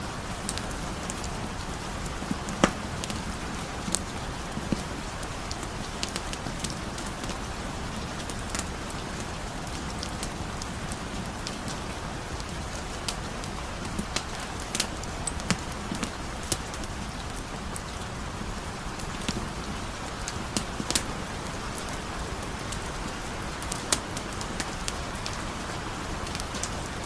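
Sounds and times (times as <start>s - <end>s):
heavy rain hiss: 0.0s - 27.0s
wood fire crackling and popping: 0.0s - 27.0s.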